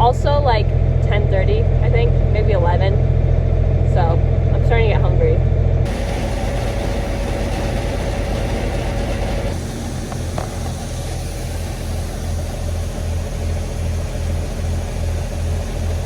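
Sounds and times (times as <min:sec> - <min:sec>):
low pulsing throb: 0:00.0 - 0:16.0
tractor engine running: 0:00.0 - 0:16.0.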